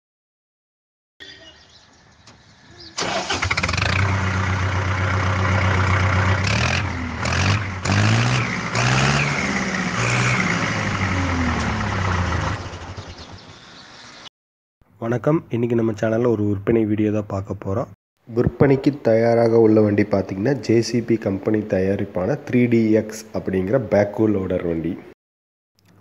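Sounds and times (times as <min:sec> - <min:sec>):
diesel engine starting and revving: 0:02.1 - 0:14.3.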